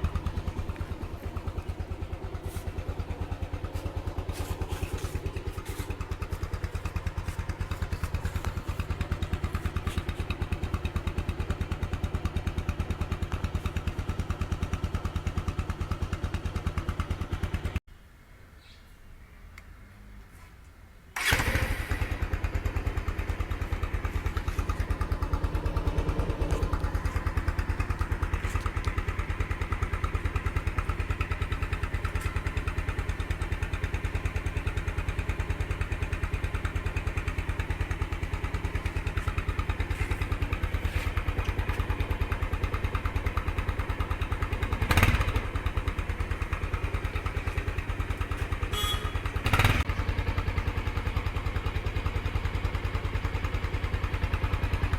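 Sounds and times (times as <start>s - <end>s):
motorcycle engine idling: 0.0s - 17.8s, 21.2s - 54.9s.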